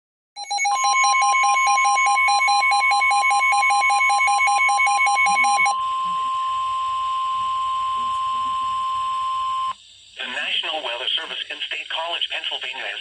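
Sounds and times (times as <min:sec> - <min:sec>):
steady high alert tone: 0:00.4 - 0:09.7
fast pulsing beeps: 0:00.4 - 0:09.8.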